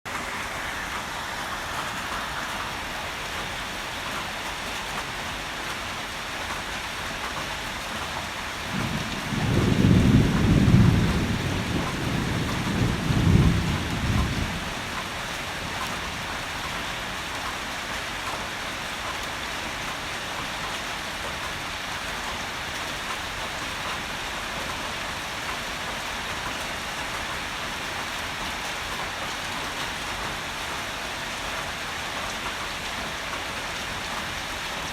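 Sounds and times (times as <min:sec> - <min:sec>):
heavy rain falling: 0:00.1 - 0:34.9
rolling thunder: 0:08.6 - 0:16.3.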